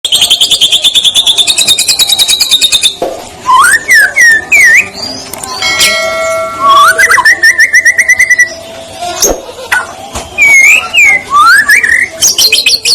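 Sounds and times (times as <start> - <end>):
songbird trilling and whistling: 0.1 - 5.6, 6.6 - 8.7, 10.3 - 12.9.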